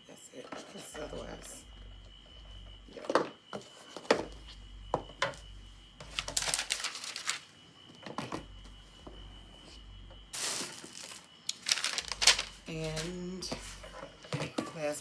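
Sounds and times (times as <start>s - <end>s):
packaging rustling: 6.0s - 7.4s, 10.4s - 13.8s.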